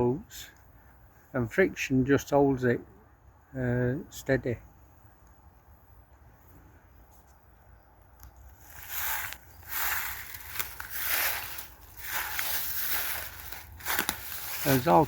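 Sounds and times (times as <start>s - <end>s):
rustling and crunching: 8.3s - 15.0s.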